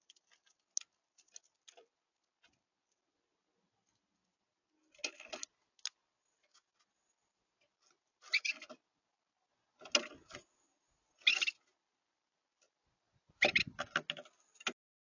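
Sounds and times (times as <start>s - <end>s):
birds pecking at a feeder: 0.0s - 3.2s, 3.8s - 8.9s, 9.7s - 11.8s, 13.4s - 14.8s.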